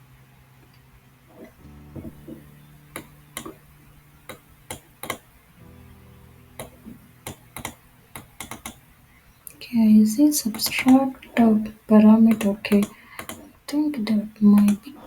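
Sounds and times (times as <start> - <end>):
faint low hum: 0.0 - 15.0
mouse and keyboard clicks: 6.6 - 8.8, 12.3 - 13.5.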